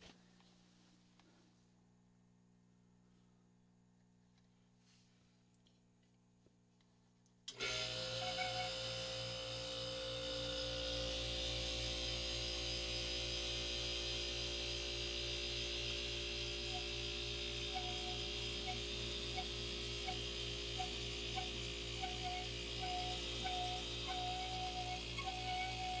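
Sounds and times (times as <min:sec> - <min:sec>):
dehumidifier humming: 0:07.5 - 0:26.0.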